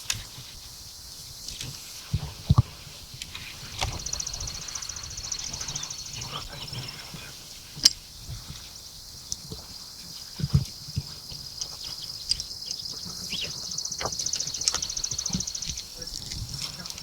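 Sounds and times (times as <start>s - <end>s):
small bird trilling: 3.8s - 7.0s, 12.7s - 15.8s.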